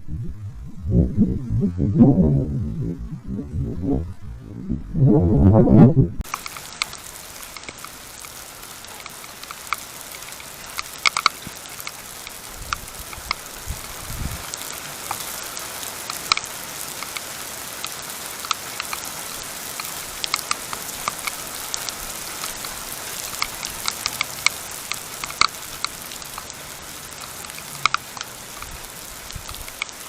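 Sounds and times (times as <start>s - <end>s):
sharp ticks and clicks: 6.2s - 30.0s
steady hiss: 6.2s - 30.0s.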